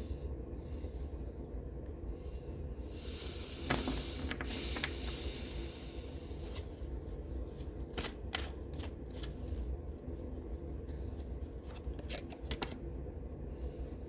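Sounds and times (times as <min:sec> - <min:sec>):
cards being shuffled: 0:03.6 - 0:05.3, 0:06.4 - 0:12.9.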